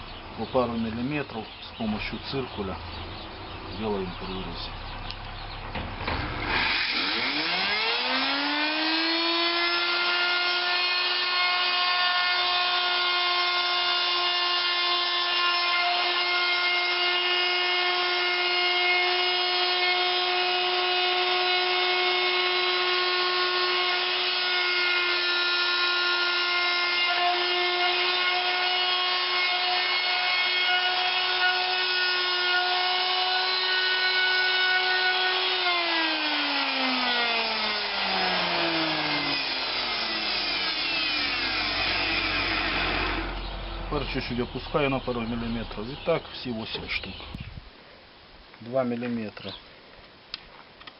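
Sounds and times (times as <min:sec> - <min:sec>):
electric router running: 0:06.0 - 0:44.2.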